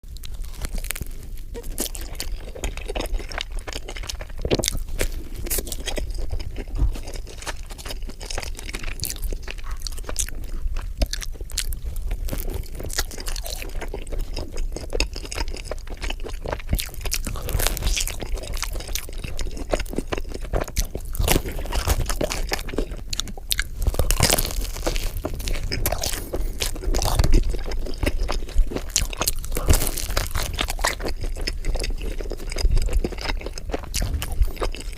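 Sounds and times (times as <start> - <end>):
crunchy pizza crust chewing: 0.0 - 34.9.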